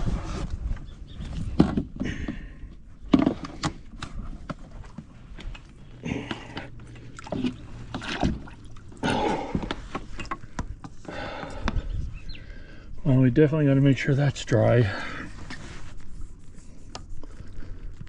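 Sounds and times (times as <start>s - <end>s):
knocks and clunks of gear: 3.1s - 8.4s
scraping and rustling: 15.0s - 17.8s.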